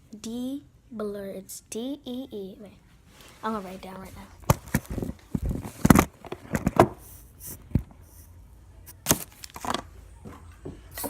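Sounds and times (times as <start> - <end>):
faint rustling: 2.8 - 8.4.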